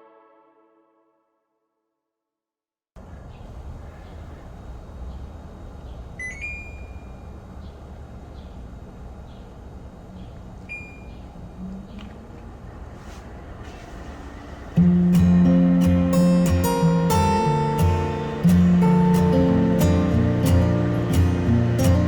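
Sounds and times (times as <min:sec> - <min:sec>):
air conditioner humming: 0:03.0 - 0:22.0
electronic beeps: 0:06.2 - 0:07.3.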